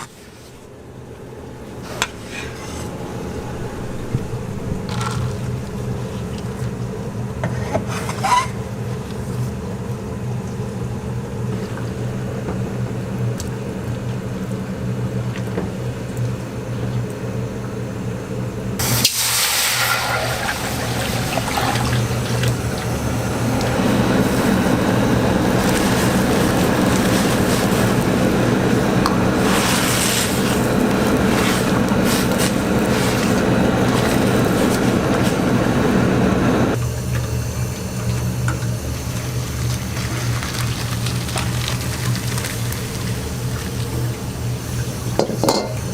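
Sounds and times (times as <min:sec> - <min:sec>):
food sizzling in hot oil: 0:18.8 - 0:34.8, 0:38.8 - 0:45.8
low hum: 0:21.2 - 0:40.1.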